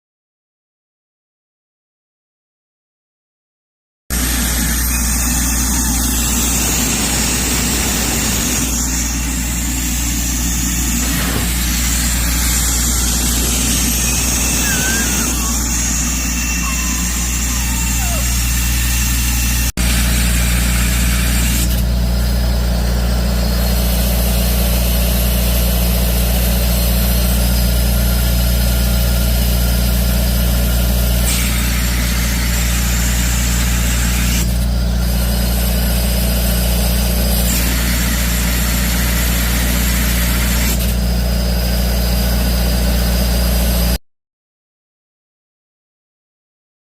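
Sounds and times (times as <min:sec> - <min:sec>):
vacuum cleaner rushing hiss: 0:05.4 - 0:18.7.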